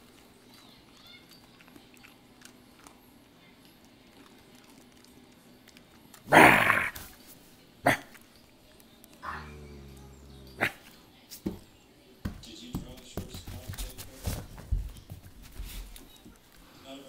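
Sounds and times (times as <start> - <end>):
dog barking: 7.9 - 8.2.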